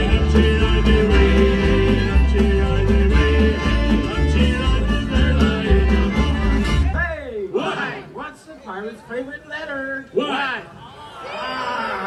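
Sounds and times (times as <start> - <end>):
live band playing a tune: 0.0 - 7.0
repeating bass line: 0.0 - 7.0.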